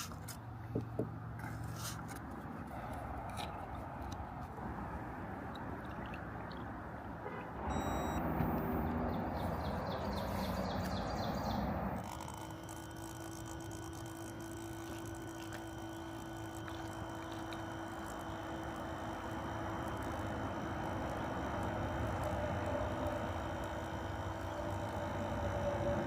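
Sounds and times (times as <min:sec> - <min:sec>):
small motor whirring: 0:05.4 - 0:26.0.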